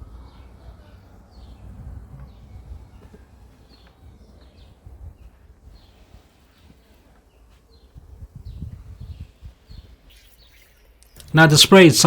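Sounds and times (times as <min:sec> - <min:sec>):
birds chirping: 0:09.7 - 0:12.0.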